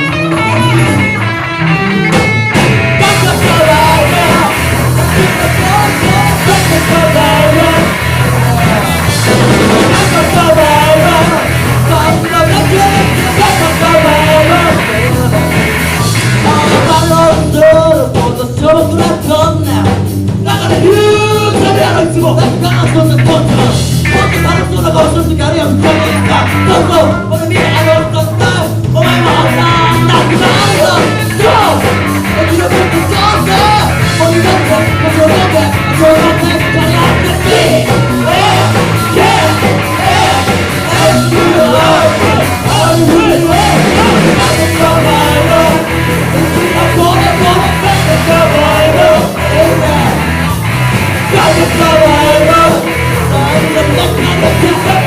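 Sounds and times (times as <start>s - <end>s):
rock band with singer: 0.0s - 55.0s.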